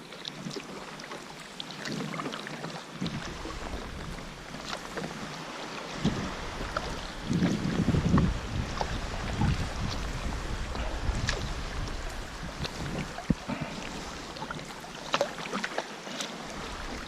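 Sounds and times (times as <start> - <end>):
water splashing and dripping: 0.1 - 17.0
wind buffeting microphone: 3.0 - 14.9, 16.4 - 17.0.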